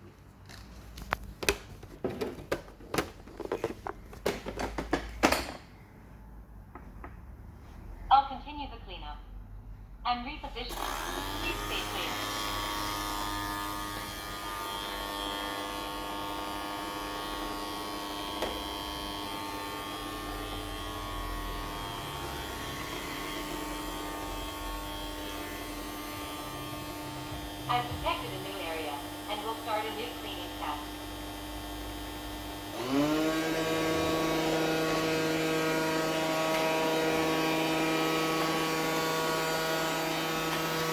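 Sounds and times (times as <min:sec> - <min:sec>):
robot vacuum buzzing whine: 0:10.7 - 0:40.9.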